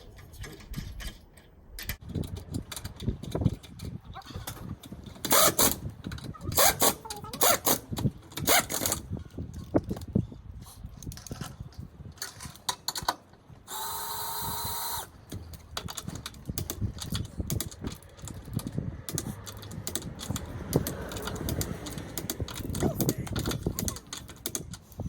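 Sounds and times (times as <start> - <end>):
clicks and knocks of tools: 0.2 - 10.2, 11.0 - 13.8, 15.0 - 25.0
power tool whirring: 5.2 - 5.8, 13.7 - 15.2.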